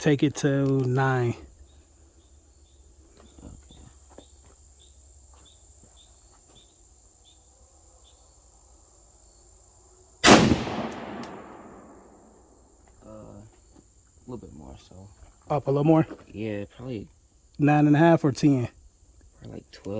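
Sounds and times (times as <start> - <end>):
crickets chirping: 0.0 - 19.9
rifle shot with echo: 10.2 - 12.4.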